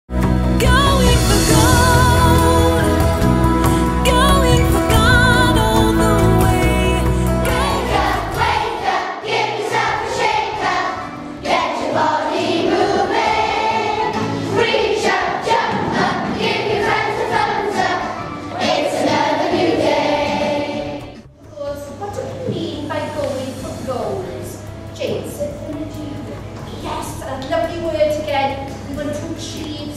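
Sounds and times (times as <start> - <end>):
instrumental accompaniment: 0.1 - 29.9
choir singing: 0.7 - 3.4, 4.1 - 21.3.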